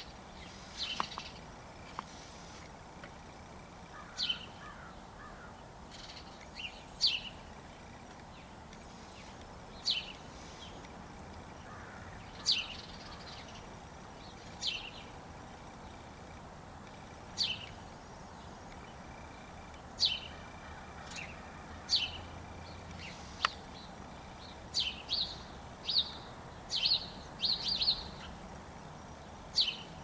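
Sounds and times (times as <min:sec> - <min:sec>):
faint crow cawing: 0:03.9 - 0:05.6, 0:11.6 - 0:13.4, 0:20.3 - 0:22.4.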